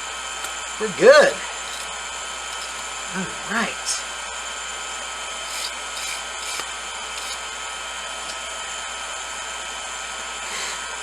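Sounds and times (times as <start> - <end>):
electric air blower whining: 0.9 - 9.7
short scratchy hisses: 5.4 - 7.4.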